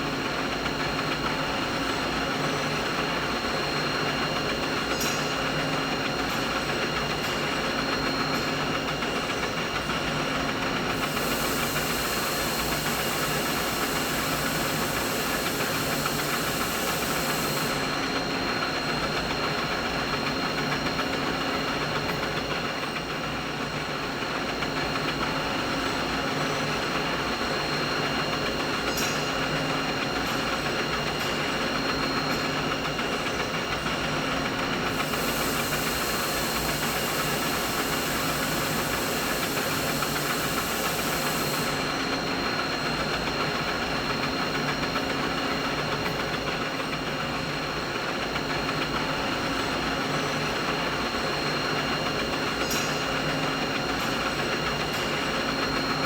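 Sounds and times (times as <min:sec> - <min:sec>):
machinery hum: 0:01.2 - 0:20.8, 0:25.0 - 0:47.0
high mechanical whine: 0:10.5 - 0:20.6, 0:34.7 - 0:45.0
high hiss: 0:10.9 - 0:17.9, 0:34.9 - 0:42.0.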